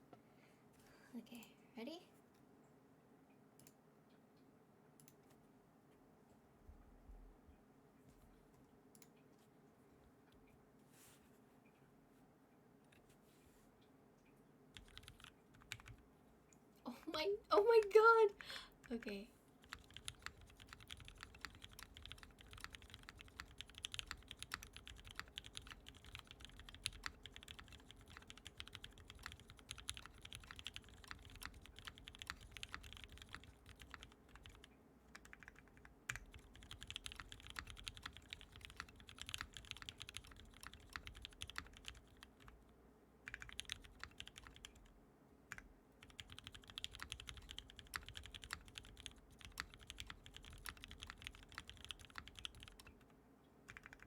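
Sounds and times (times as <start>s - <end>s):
mechanical keyboard typing: 14.8s - 16.0s, 17.6s - 44.9s, 45.5s - 53.1s, 53.7s - 54.0s.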